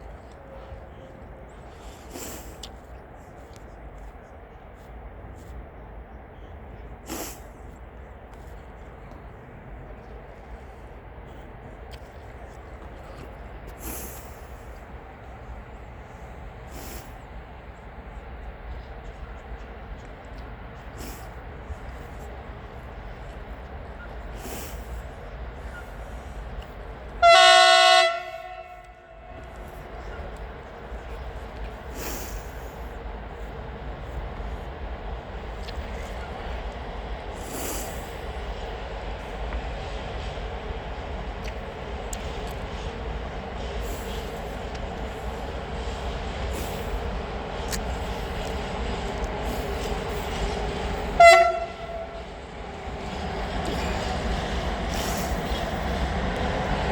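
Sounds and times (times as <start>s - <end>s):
freight train rumbling: 0.0s - 56.9s
electric locomotive horn blast: 27.1s - 29.8s, 51.1s - 52.4s.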